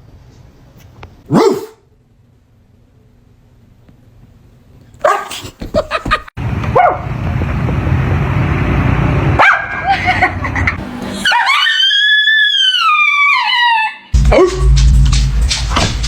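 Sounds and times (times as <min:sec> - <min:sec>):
puppy barking and yipping: 0:01.3 - 0:01.8, 0:05.0 - 0:05.9, 0:09.4 - 0:09.9, 0:11.2 - 0:14.6
loud low noise: 0:06.4 - 0:09.4
music: 0:14.2 - 0:16.0.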